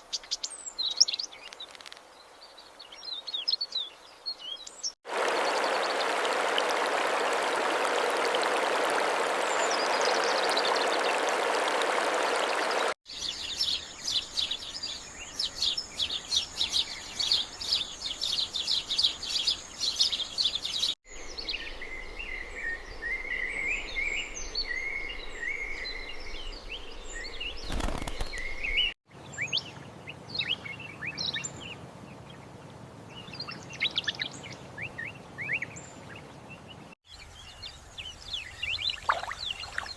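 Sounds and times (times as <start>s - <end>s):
songbirds chirping: 0.0s - 39.9s.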